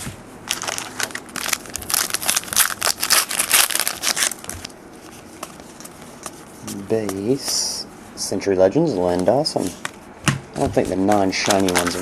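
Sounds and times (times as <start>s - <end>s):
wrapper crinkling and tearing: 0.5s - 4.7s, 11.2s - 12.0s.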